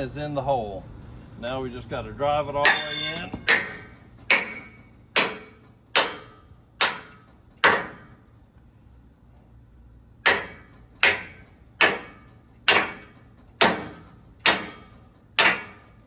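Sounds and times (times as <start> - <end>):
hammer striking metal pin: 2.6 - 8.1, 10.2 - 15.8.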